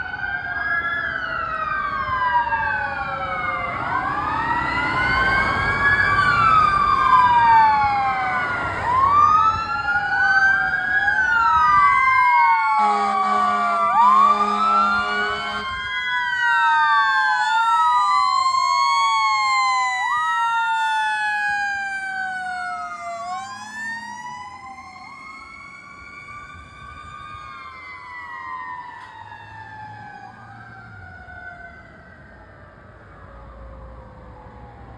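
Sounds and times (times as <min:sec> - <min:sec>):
electronic sirens wailing: 0:00.0 - 0:34.9
horn blasts: 0:12.8 - 0:15.7.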